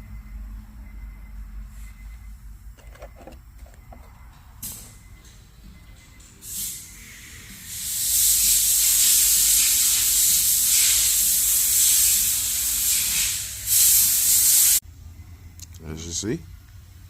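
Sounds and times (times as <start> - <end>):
pressurised spray hissing: 6.4 - 14.8.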